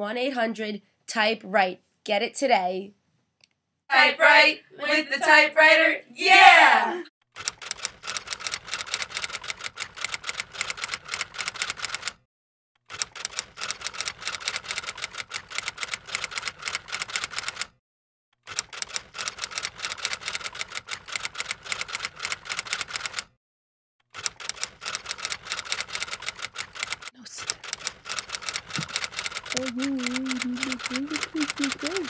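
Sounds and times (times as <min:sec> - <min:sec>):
typewriter keys clacking: 0:24.2 - 0:32.0.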